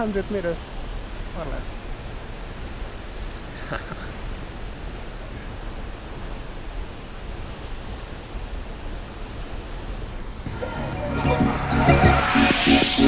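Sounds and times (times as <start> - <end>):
steady rushing noise: 9.4 - 13.0.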